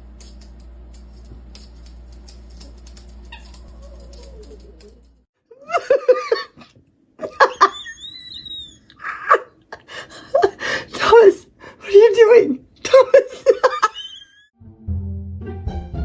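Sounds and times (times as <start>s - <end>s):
pet yowling: 3.2s - 5.7s, 7.4s - 9.5s.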